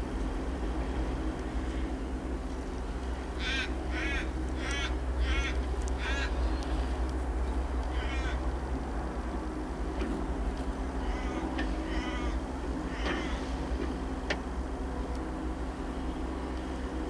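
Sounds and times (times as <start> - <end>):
excavator diesel engine running: 0.0 - 17.0
bird calling: 3.4 - 6.8, 7.9 - 8.4, 11.0 - 13.4.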